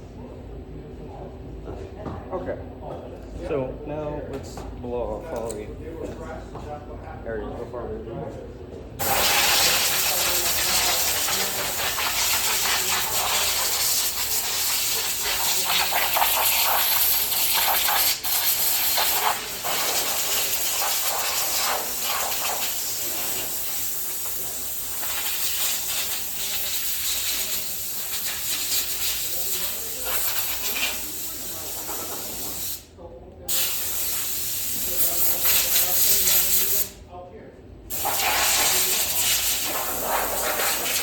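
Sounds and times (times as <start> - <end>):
air nozzle hissing: 9.0 - 32.8, 33.5 - 36.9, 37.9 - 41.0.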